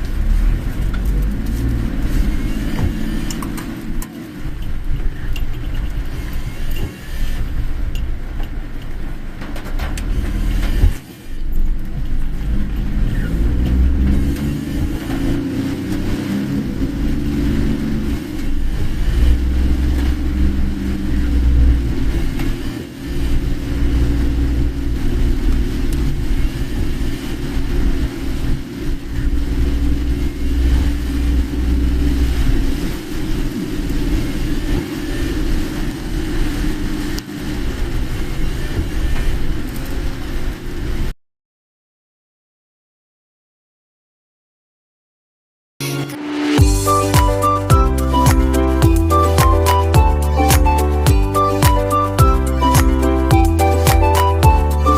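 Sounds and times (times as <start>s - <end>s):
car engine and road rumble: 0.0s - 41.1s.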